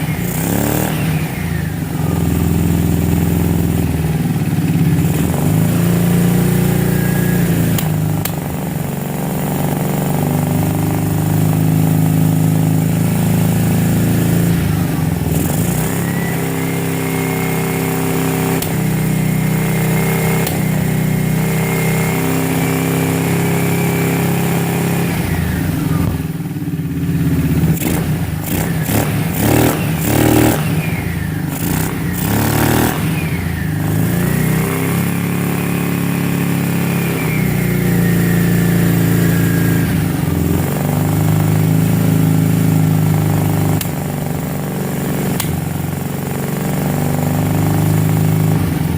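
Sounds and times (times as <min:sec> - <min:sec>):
quad engine idling and revving: 0:00.0 - 0:48.9
engine backfire pops: 0:07.2 - 0:08.6, 0:45.3 - 0:45.8.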